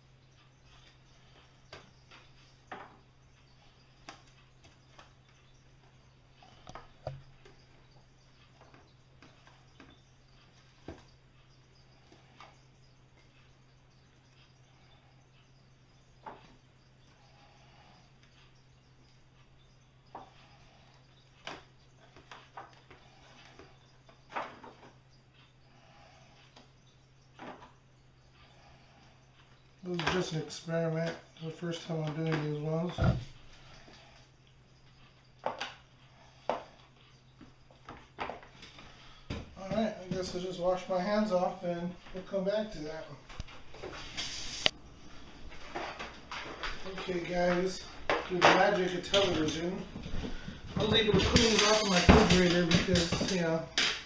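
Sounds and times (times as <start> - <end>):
steady low hum: 0.0 - 54.0
objects knocking and clicking: 1.6 - 3.1, 35.4 - 40.5, 45.4 - 54.0.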